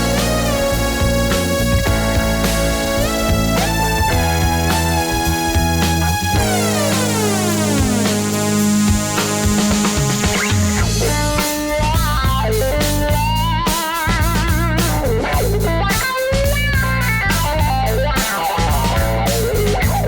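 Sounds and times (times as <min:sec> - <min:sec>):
synthesizer lead melody: 0:00.0 - 0:12.6
held bass notes: 0:00.0 - 0:20.0
steady beat: 0:00.0 - 0:20.0.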